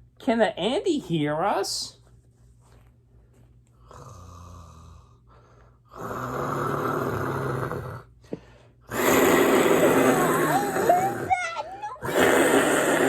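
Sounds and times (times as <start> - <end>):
person imitating snoring: 5.9 - 8.1, 8.9 - 13.0.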